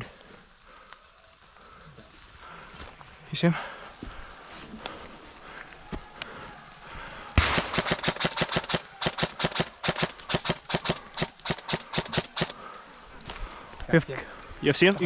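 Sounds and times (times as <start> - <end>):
airsoft guns firing: 7.4 - 12.6.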